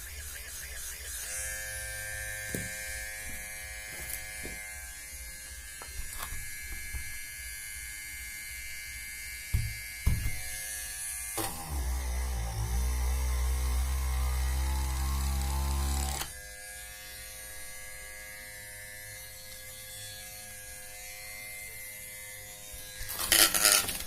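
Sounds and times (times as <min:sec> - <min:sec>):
small motor whining: 0:10.2 - 0:16.7, 0:21.6 - 0:24.0.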